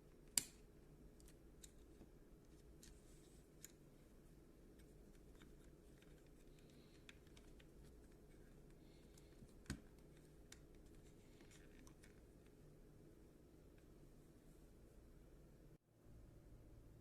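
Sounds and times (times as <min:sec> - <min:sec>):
low steady hum: 0:00.0 - 0:17.0
small parts clicking and tapping: 0:04.7 - 0:12.6.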